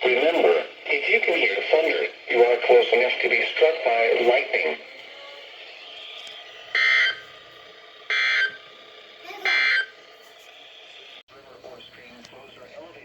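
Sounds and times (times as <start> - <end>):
buzzy digital bursts: 9.4 - 10.0.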